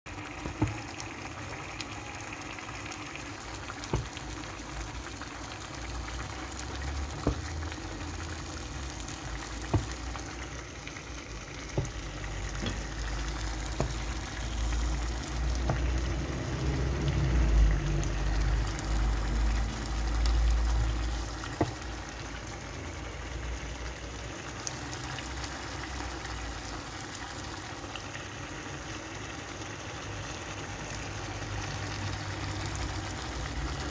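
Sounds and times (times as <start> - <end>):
food bubbling in a pan: 0.1 - 33.9
utensil knocking: 7.1 - 7.6, 9.5 - 10.2, 11.7 - 14.4.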